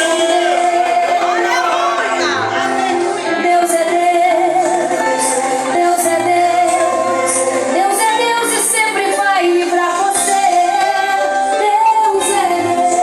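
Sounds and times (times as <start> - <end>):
musical accompaniment: 0.5 - 5.0
woman singing worship song: 0.6 - 6.9.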